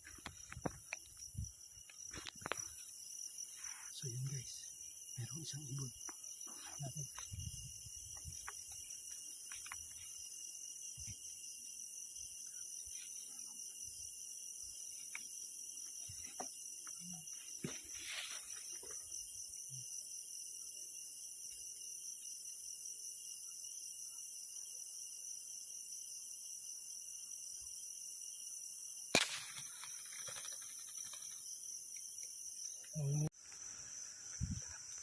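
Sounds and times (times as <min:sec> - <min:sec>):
crickets and insects chirping: 0:00.0 - 0:35.0
air rifle shot: 0:29.2 - 0:29.7.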